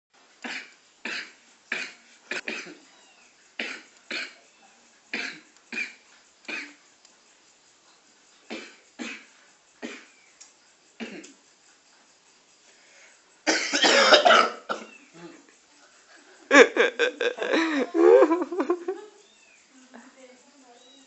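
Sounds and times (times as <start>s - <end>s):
person coughing: 13.5s - 14.9s, 16.5s - 18.4s.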